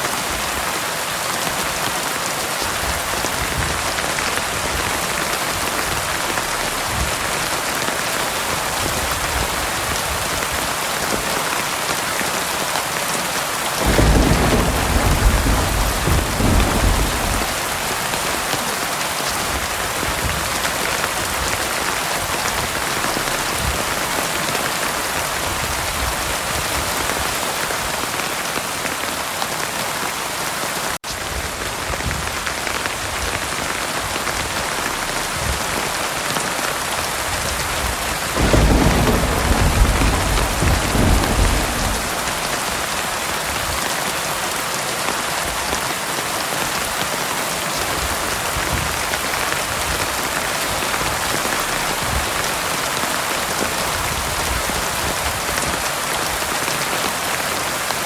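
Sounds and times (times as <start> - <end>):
heavy rain pouring: 0.0 - 58.0
low rumble of thunder: 13.8 - 18.7, 37.1 - 43.8.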